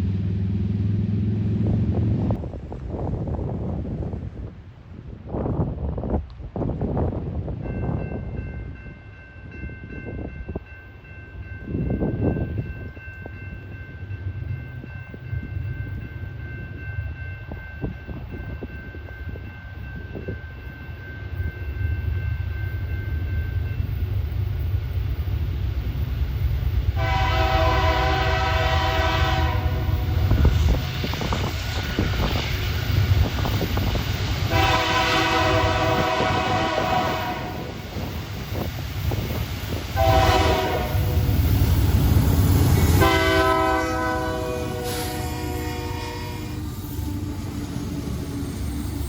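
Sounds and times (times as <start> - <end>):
diesel train engine rumble: 0.0 - 49.0
locomotive horn chord: 27.0 - 30.3, 34.5 - 37.7, 40.0 - 41.2, 42.8 - 46.6.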